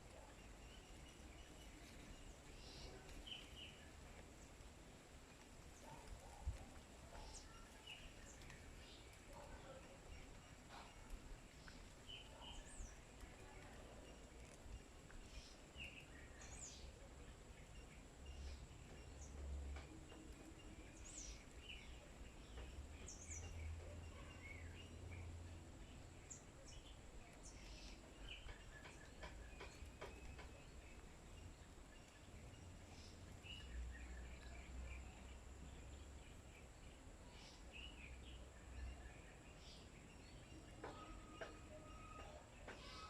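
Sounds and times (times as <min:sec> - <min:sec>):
bird chirps and calls: 0:07.1 - 0:43.0.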